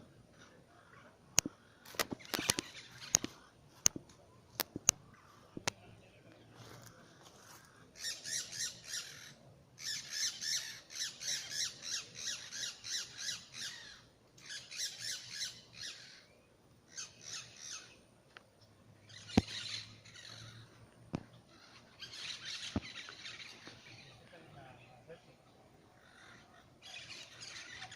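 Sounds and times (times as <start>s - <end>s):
birds squawking: 0.4s - 3.5s, 7.3s - 16.3s, 16.9s - 18.0s, 19.0s - 24.8s, 25.8s - 27.9s.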